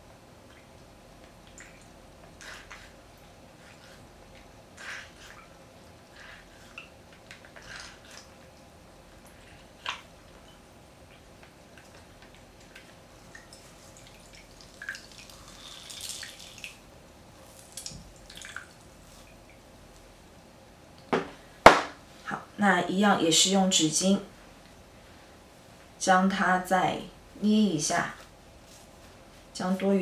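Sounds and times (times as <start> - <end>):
water drips and small splashes: 0.5 - 2.8, 6.7 - 16.9, 17.5 - 19.6.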